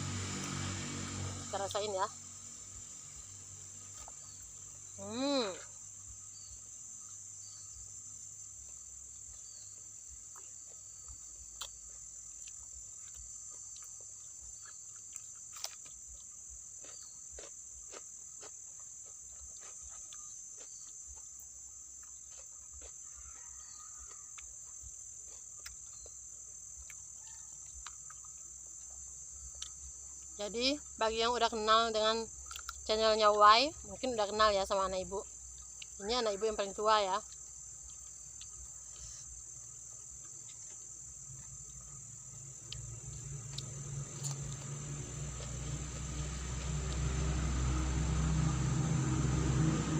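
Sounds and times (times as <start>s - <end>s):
insects buzzing drone: 0.0s - 49.9s.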